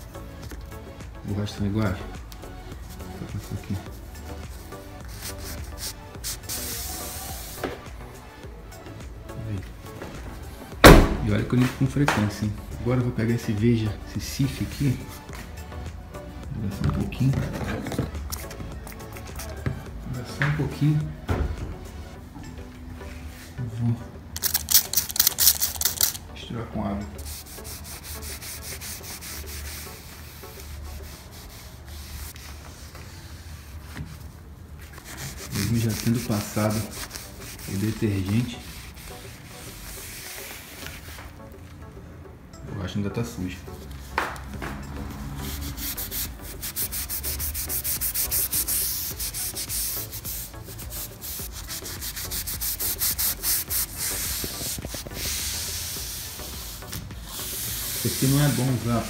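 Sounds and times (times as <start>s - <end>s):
scrubbing rubber door seal: 10.8s - 11.3s
hand scrubbing rubber seal: 24.4s - 26.2s, 34.9s - 41.4s, 45.2s - 59.0s.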